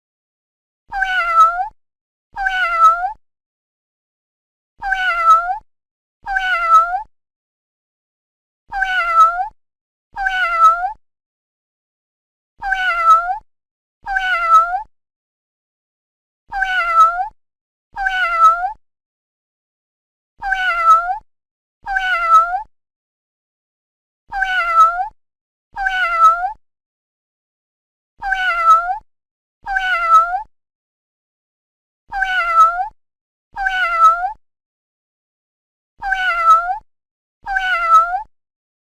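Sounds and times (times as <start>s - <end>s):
kitten meowing: 24.4s - 25.0s, 28.2s - 29.0s, 32.1s - 32.8s, 36.0s - 36.8s.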